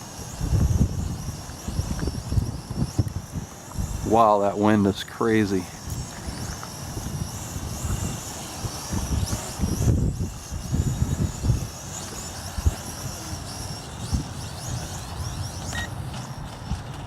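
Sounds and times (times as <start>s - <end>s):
drone propellers whining: 0.0s - 17.0s
wind buffeting microphone: 0.0s - 17.0s.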